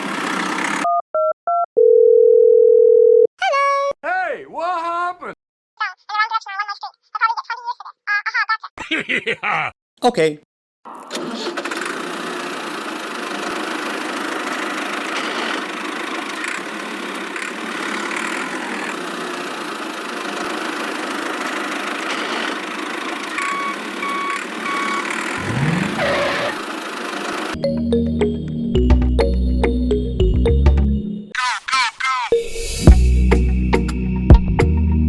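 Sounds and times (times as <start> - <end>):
toy machine engine running: 11.2 - 25.4.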